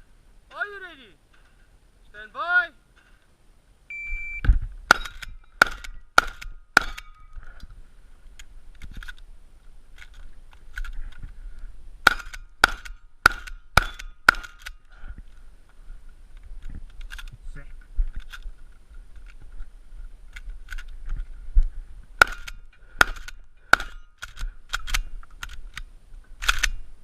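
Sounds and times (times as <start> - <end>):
shot timer beep: 3.9 - 5.2
gunshots: 4.9 - 7.2, 12.0 - 14.7, 22.2 - 24.1.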